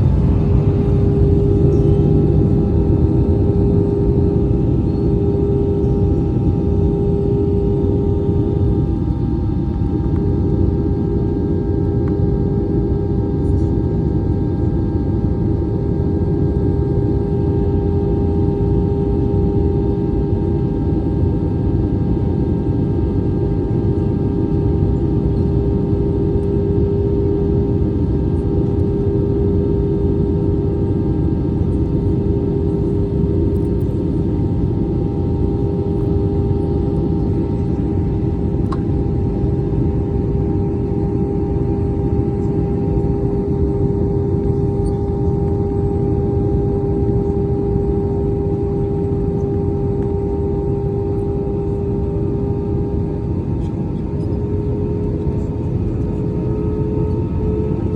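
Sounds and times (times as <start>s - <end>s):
airliner cabin noise: 0.0s - 13.0s, 25.5s - 57.9s.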